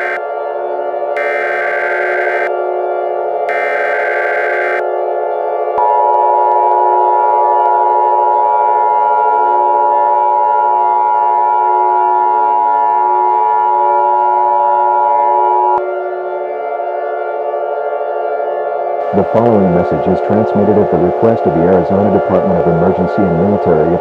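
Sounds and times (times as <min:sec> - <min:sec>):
two-tone alert signal: 0:00.0 - 0:00.2, 0:01.2 - 0:02.5, 0:03.5 - 0:04.8.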